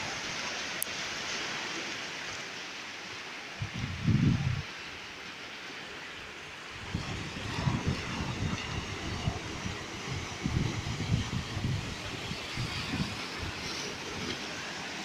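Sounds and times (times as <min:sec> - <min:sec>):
wind buffeting microphone: 0:03.6 - 0:04.7, 0:06.7 - 0:14.8
steady rushing noise: 0:06.1 - 0:15.0.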